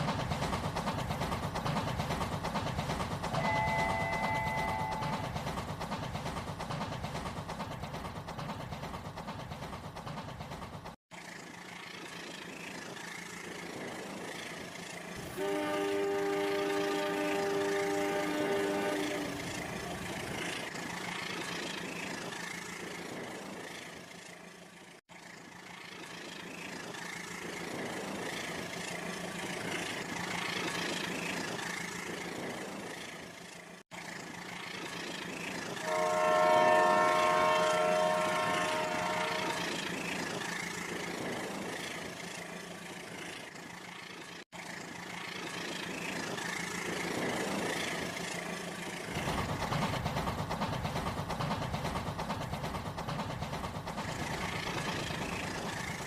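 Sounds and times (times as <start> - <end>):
train running past: 0.0 - 56.0
train horn blowing: 15.2 - 19.9, 35.8 - 40.0.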